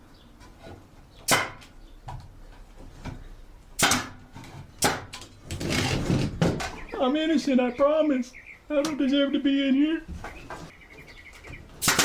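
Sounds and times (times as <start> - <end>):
nail gun shots with air hiss: 1.3 - 1.6, 3.8 - 4.2, 4.8 - 5.1, 11.8 - 12.0.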